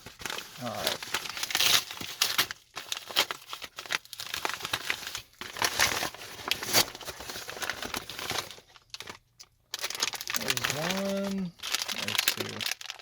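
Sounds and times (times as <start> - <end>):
packaging crinkling and tearing: 0.0 - 13.0.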